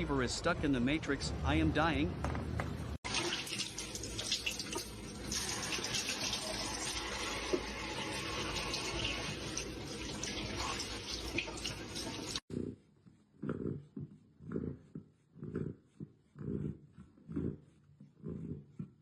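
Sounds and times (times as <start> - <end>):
water running into a sink: 3.0 - 12.4.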